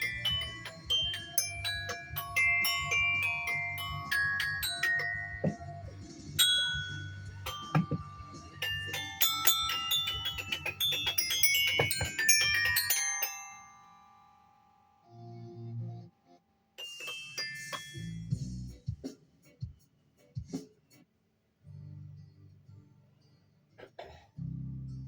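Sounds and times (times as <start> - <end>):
mallet percussion runs: 0.0 - 14.6, 16.8 - 18.6.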